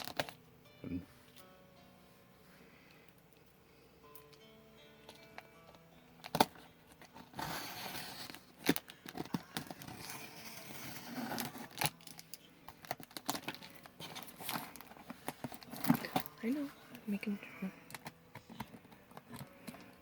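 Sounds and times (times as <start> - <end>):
cardboard being cut and torn: 7.2 - 11.9.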